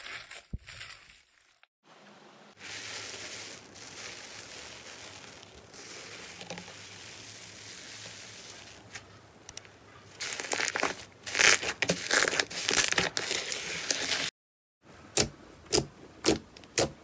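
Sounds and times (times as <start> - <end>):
slime crackling and rustling: 0.0 - 1.7, 2.5 - 14.3.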